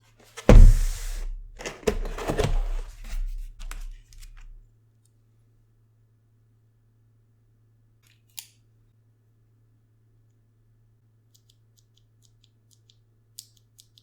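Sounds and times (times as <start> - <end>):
cardboard scraping: 0.3 - 4.6
cardboard box knocking: 0.4 - 4.6
packaging rustling: 0.4 - 4.6.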